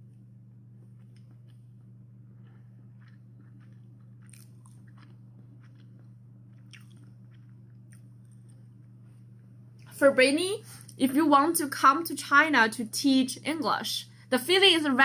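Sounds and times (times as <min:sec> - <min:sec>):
faint chewing: 0:00.0 - 0:10.0
steady low hum: 0:00.0 - 0:15.0
wet mouth clicks: 0:03.0 - 0:08.6.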